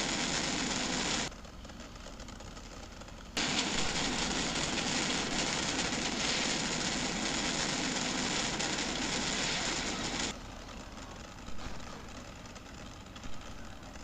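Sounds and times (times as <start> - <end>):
loud steady rushing noise: 0.0 - 1.3, 3.4 - 10.3.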